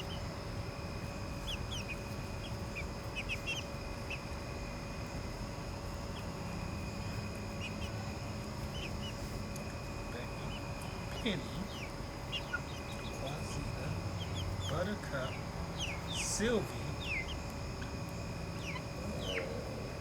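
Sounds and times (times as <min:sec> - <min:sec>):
chickens chirping: 0:00.0 - 0:20.0.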